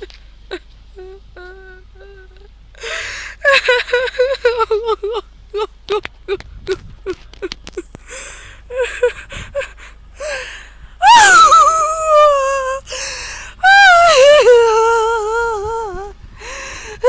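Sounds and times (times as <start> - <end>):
gasping breaths: 2.8 - 3.4, 8.0 - 11.0, 12.8 - 13.6, 16.3 - 17.0
high-pitched voice crying: 3.4 - 7.9, 8.7 - 9.8, 11.0 - 12.9, 13.6 - 16.1
loud wailing cries: 11.0 - 12.8.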